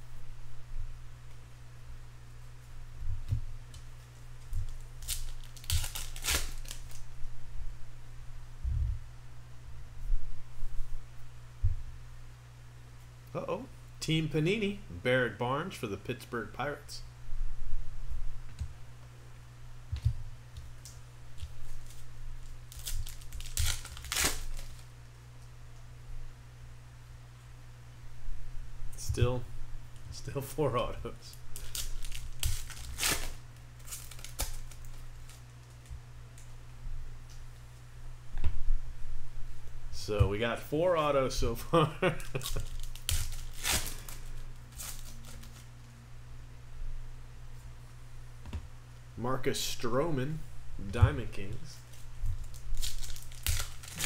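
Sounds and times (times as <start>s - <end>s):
steady low hum: 0.0s - 54.0s
cards crinkling and rustling: 3.8s - 7.0s, 20.6s - 24.9s, 31.3s - 36.4s, 42.0s - 45.8s, 51.4s - 54.0s.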